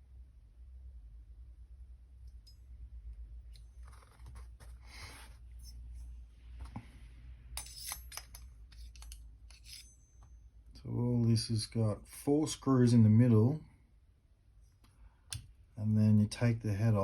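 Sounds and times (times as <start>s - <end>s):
low steady hum: 0.0s - 17.0s
rustling and scraping of parts: 3.5s - 10.4s.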